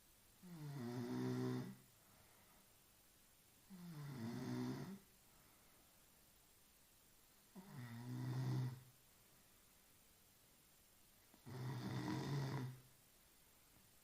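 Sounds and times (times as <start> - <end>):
woman snoring: 0.4 - 1.8, 3.7 - 5.0, 7.6 - 8.8, 11.4 - 12.8.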